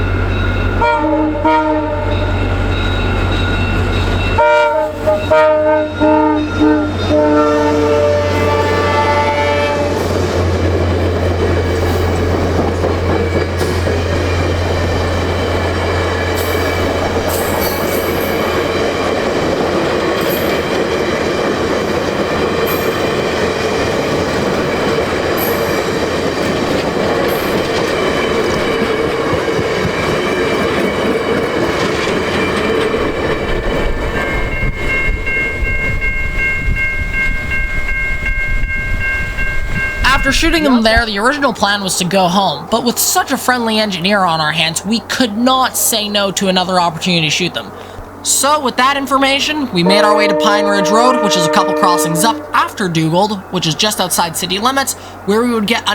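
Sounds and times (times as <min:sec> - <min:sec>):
train wheels clattering on rails: 0:00.0 - 0:41.3
steady high tones: 0:48.3 - 0:55.8.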